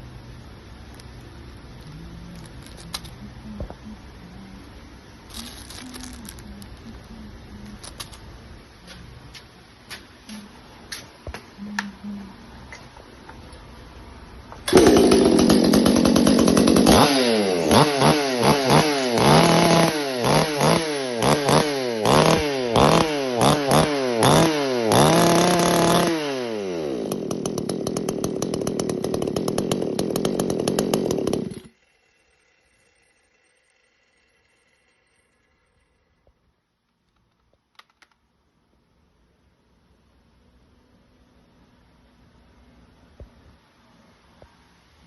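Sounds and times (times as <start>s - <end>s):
chainsaw revving: 14.7s - 35.2s.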